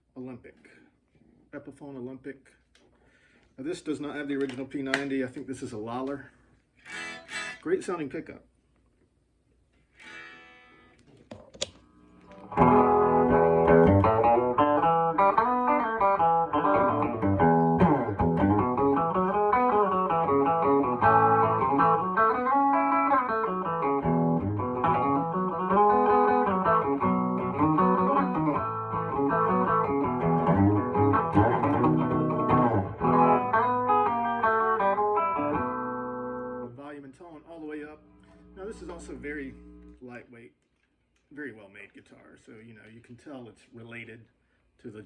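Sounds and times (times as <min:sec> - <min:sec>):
electric guitar playing: 0:06.8 - 0:07.6, 0:10.0 - 0:11.0, 0:11.7 - 0:36.8, 0:38.0 - 0:40.0.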